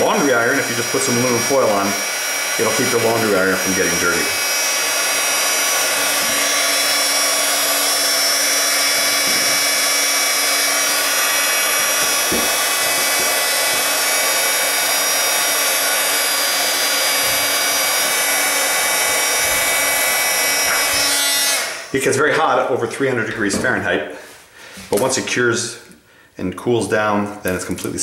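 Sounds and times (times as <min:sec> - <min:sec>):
heat gun blowing air: 0:00.0 - 0:22.0.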